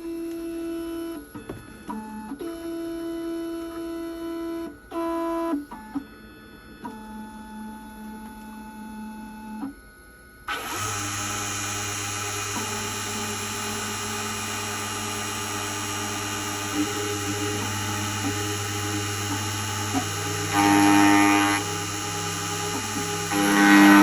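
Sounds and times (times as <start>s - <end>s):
cutter motor humming and hissing: 10.5s - 24.0s
positioning motors whining: 10.5s - 24.0s.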